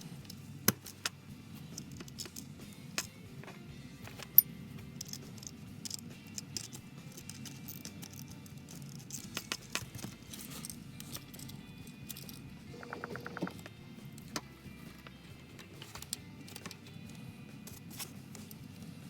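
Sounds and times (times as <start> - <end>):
small metal hardware clicking: 4.2 - 14.4.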